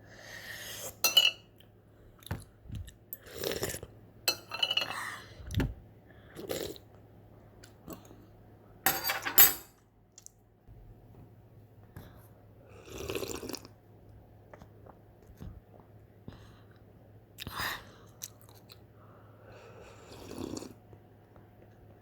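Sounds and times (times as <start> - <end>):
utensils clinking against bowl: 1.0 - 1.5, 4.3 - 5.0, 8.9 - 9.8.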